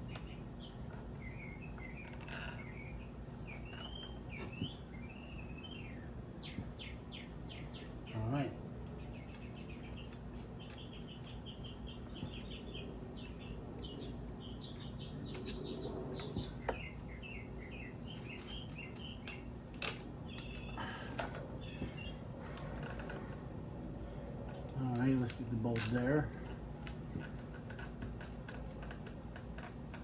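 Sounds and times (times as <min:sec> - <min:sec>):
small bird chirping: 0:00.0 - 0:20.9, 0:21.5 - 0:23.5, 0:24.5 - 0:30.0.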